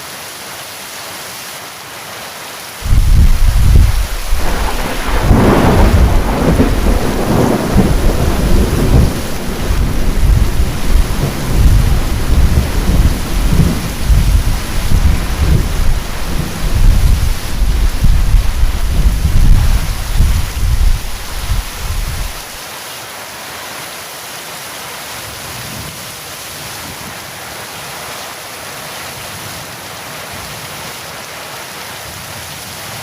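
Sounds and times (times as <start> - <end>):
heavy rain falling: 0.0 - 33.0
thunder rumbling: 2.8 - 22.6.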